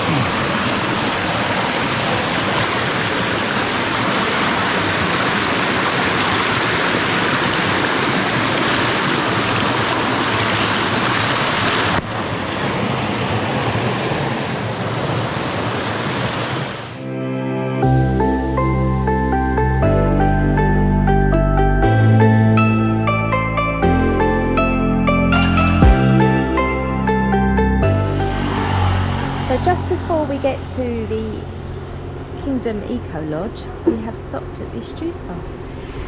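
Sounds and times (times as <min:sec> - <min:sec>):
waterfall rushing into pool: 0:00.0 - 0:17.0.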